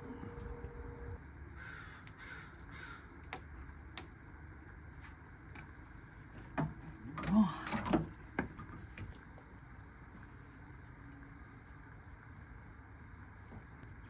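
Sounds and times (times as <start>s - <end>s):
crow cawing: 1.6s - 3.1s.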